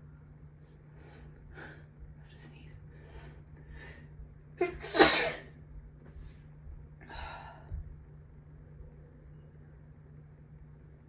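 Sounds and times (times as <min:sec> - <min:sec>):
noisy breath: 0:02.9 - 0:04.2
man sneezing: 0:04.7 - 0:05.4.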